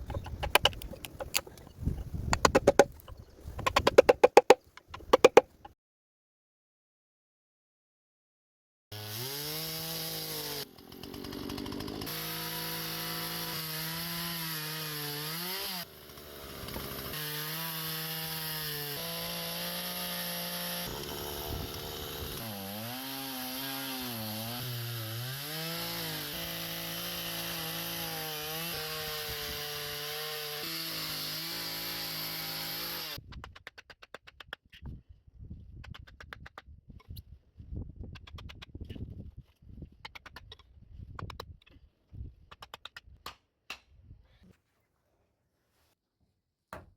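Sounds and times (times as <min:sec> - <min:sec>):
power saw cutting wood: 0:00.0 - 0:01.5, 0:02.4 - 0:03.0, 0:09.0 - 0:33.2.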